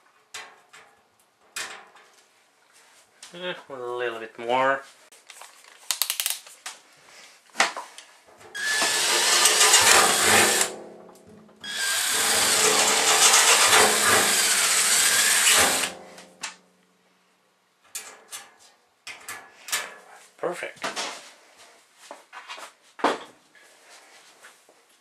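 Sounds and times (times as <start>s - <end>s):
power drill running: 8.6s - 10.7s, 11.6s - 15.9s.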